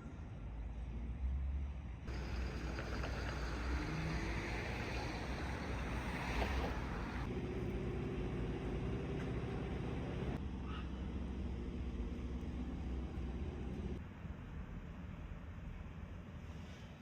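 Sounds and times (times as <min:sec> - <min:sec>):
vehicle low rumble: 0:00.0 - 0:17.0
faint steady hum: 0:02.1 - 0:05.7.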